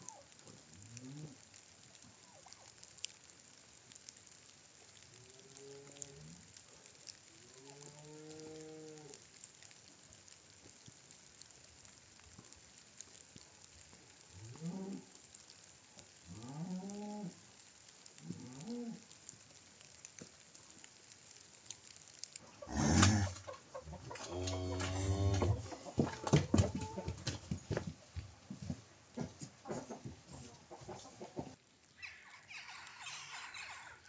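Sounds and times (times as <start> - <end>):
farm animals calling: 22.4 - 27.5, 29.6 - 34.0.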